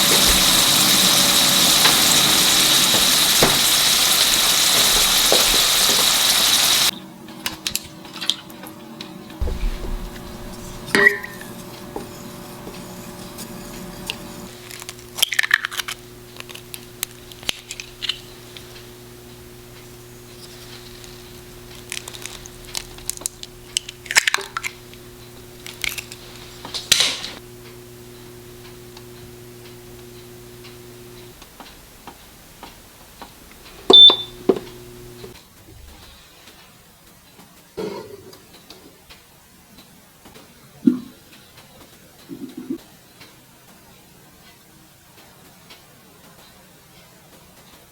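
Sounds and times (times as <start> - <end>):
low appliance hum: 0.0 - 7.3, 8.6 - 36.5.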